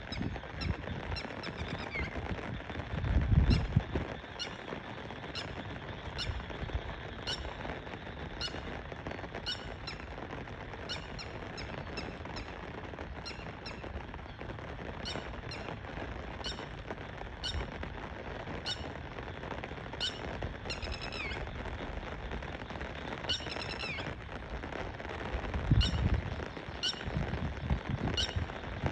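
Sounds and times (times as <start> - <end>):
birds calling: 10.8 - 12.6, 13.2 - 15.7, 20.0 - 21.4, 23.2 - 24.1, 25.7 - 27.2.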